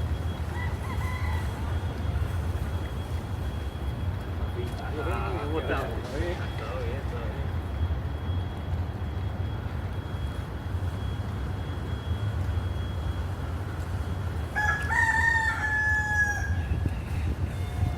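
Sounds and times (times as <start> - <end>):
rooster crowing: 0.5 - 1.8, 14.6 - 17.9.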